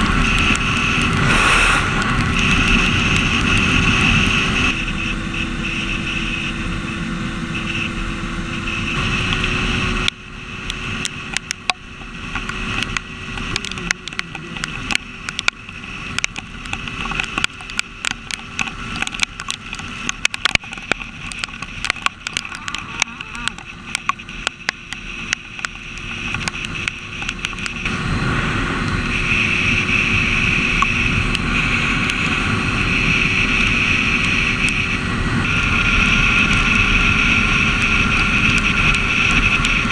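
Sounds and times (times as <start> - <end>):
raindrops tapping on camera: 0.0 - 1.3, 1.9 - 4.8, 9.2 - 27.9, 32.9 - 39.9
motorcycle engine running: 0.0 - 39.9
wind noise: 0.0 - 39.9.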